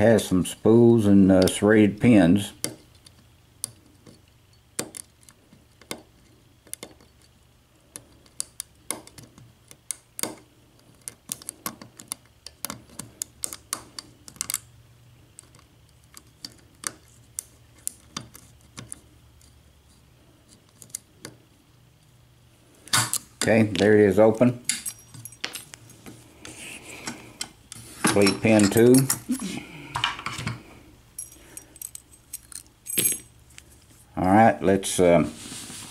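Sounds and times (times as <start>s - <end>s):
lock pick clicking pins: 2.6s - 19.6s, 20.5s - 21.4s, 31.2s - 33.7s.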